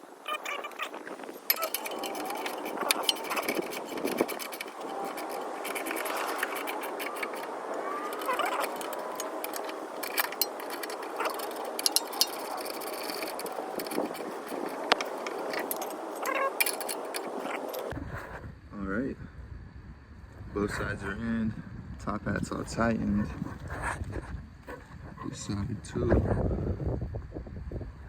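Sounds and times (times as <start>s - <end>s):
metal parts clinking and scraping: 0.3s - 18.0s.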